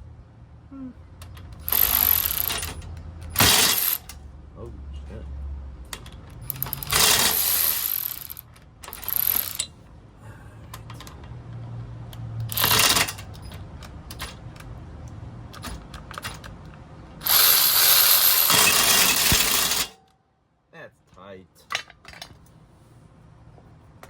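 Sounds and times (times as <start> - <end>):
hand wrench ratcheting: 1.2 - 4.2, 6.4 - 9.7, 12.4 - 14.3, 17.2 - 20.0.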